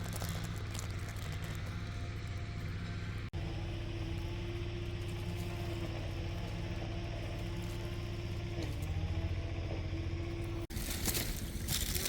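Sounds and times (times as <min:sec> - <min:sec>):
engine idling: 0:00.0 - 0:12.0.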